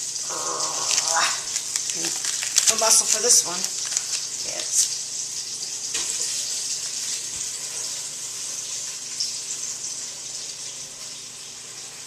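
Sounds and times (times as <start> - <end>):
butter sizzling in a pot: 0.0 - 12.0.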